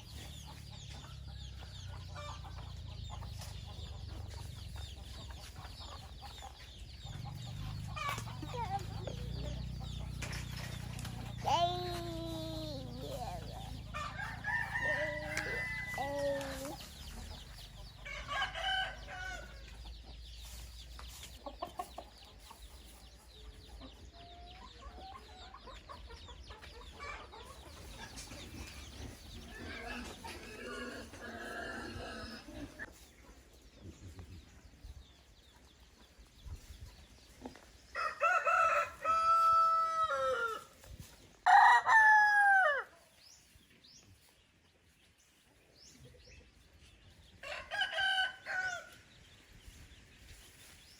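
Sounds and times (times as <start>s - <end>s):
roosters crowing: 7.2s - 19.8s, 28.0s - 32.9s, 37.9s - 43.0s, 47.3s - 49.1s.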